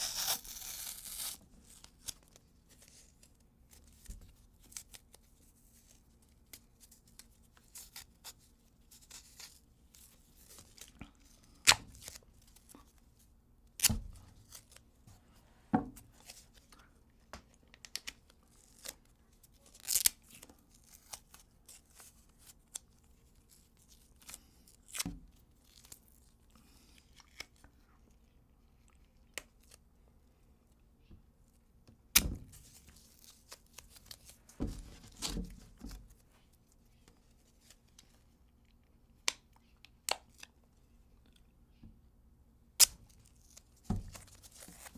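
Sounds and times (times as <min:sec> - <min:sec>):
tape ripping: 0:00.0 - 0:02.2, 0:19.8 - 0:20.2
tape crinkling: 0:00.0 - 0:03.1, 0:42.8 - 0:44.9.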